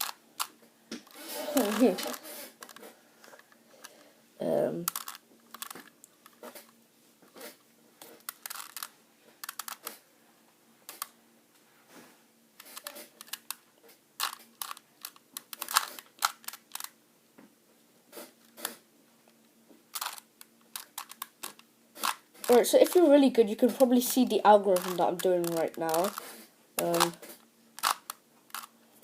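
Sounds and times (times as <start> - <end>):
puzzle cube plastic clicks: 0.0 - 4.0, 4.8 - 6.7, 8.0 - 10.0, 10.9 - 11.1, 12.6 - 13.6, 14.2 - 17.0, 19.9 - 28.7
faint steady hum: 0.0 - 29.0.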